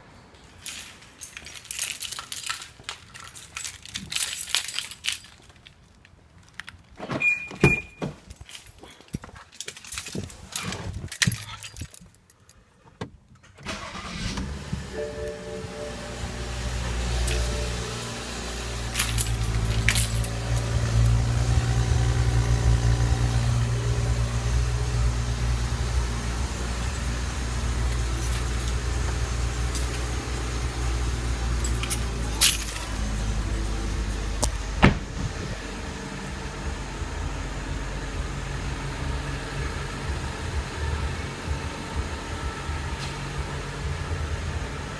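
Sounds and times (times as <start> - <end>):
car engine idling: 13.7 - 44.9.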